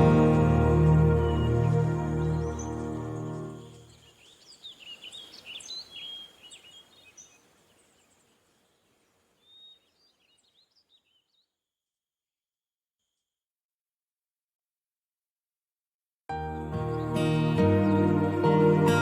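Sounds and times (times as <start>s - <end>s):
faint outdoor hiss: 0.0s - 11.1s
songbirds chirping and warbling: 0.0s - 11.6s.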